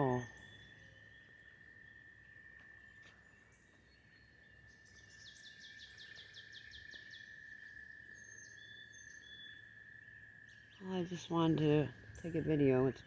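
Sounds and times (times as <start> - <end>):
faint bird chirps: 0.0 - 9.8.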